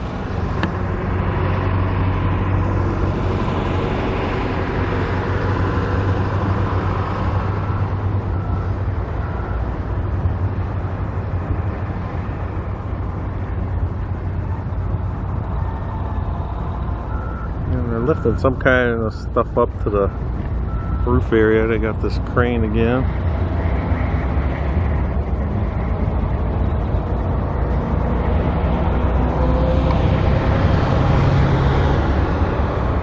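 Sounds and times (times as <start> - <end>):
vehicle engine humming: 0.0 - 33.0
reversing alarm beeps: 7.6 - 9.7, 17.1 - 18.5, 20.7 - 21.2.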